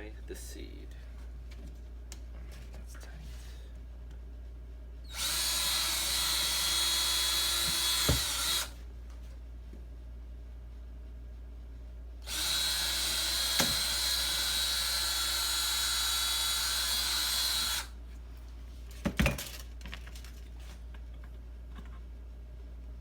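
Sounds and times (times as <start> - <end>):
power drill running: 5.1 - 8.8, 12.2 - 18.0.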